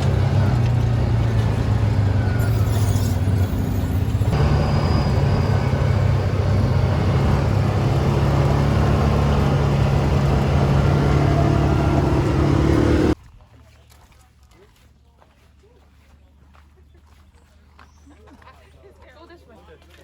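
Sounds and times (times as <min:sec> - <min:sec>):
atv engine droning: 0:00.0 - 0:13.2.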